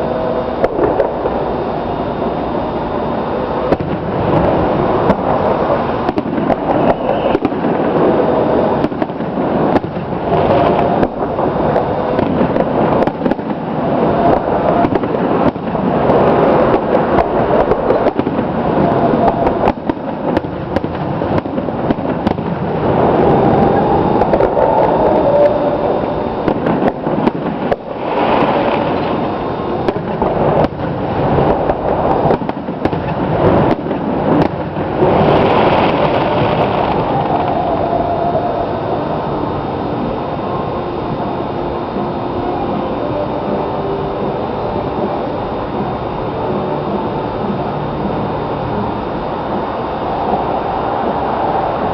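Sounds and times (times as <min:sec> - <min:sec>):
fireworks bursting bangs: 0:00.0 - 0:39.1
continuous loud din: 0:00.0 - 0:51.9.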